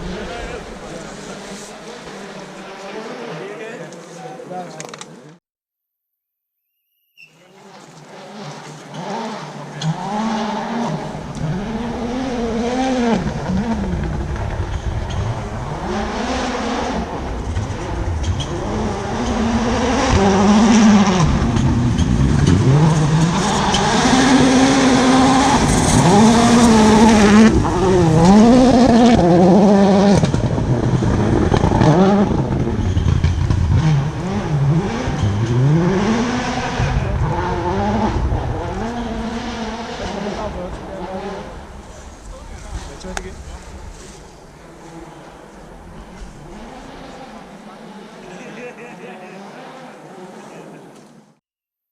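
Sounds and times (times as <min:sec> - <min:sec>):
rally car engine revving: 0:00.0 - 0:03.8, 0:07.5 - 0:51.2.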